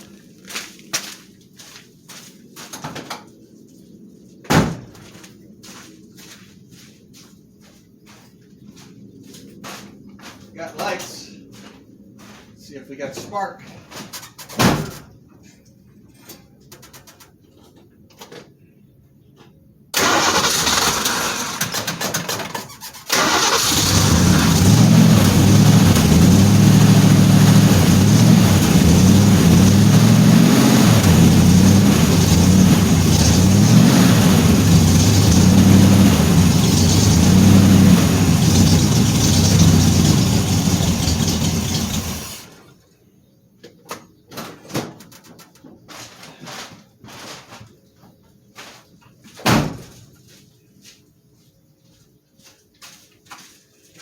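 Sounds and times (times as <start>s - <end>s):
car engine starting and running: 20.0s - 22.5s, 23.1s - 42.6s.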